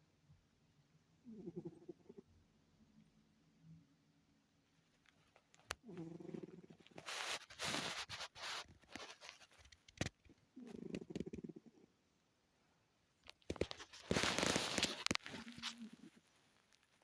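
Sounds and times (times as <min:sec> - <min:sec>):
cat snoring: 0:01.2 - 0:02.2, 0:05.8 - 0:08.0.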